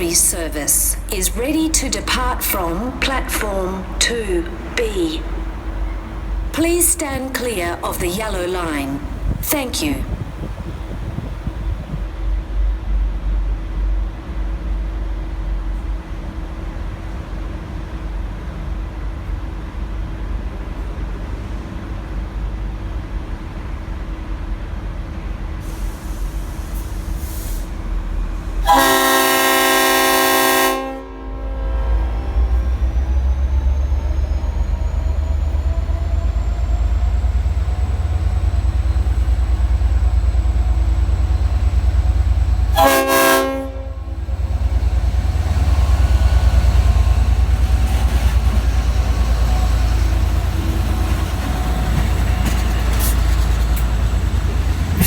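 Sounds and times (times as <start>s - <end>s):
locomotive engine rumbling: 0.0s - 15.6s, 25.9s - 55.0s
locomotive horn blast: 28.6s - 32.4s, 42.7s - 44.6s.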